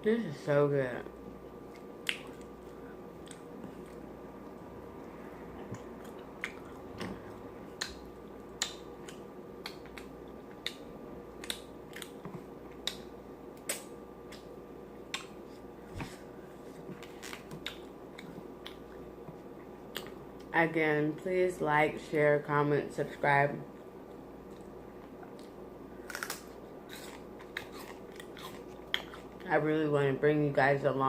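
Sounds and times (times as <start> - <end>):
steady low hum: 0.0 - 31.0
chewing with mouth smacks: 1.6 - 4.6, 5.5 - 15.6, 16.7 - 20.5, 23.7 - 29.5.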